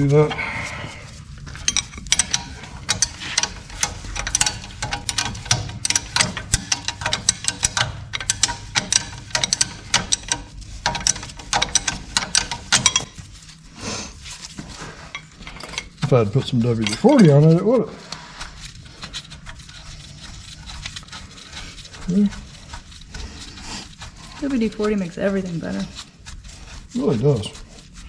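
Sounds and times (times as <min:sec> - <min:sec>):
hand ratchet clicking: 0:01.6 - 0:13.2.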